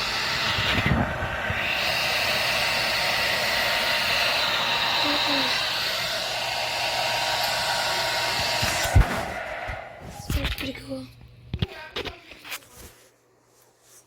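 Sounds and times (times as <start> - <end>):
hair dryer running: 0.0 - 10.2.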